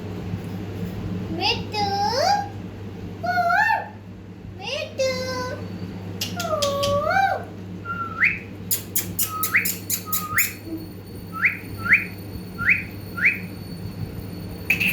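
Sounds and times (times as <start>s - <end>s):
parrot sharp clicks: 6.2s - 7.0s, 8.7s - 10.6s
parrot whistling: 7.8s - 10.7s, 11.3s - 13.6s, 14.7s - 14.9s.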